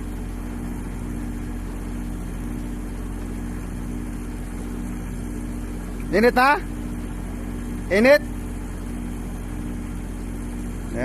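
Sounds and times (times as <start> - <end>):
compressor humming: 0.0 - 11.0.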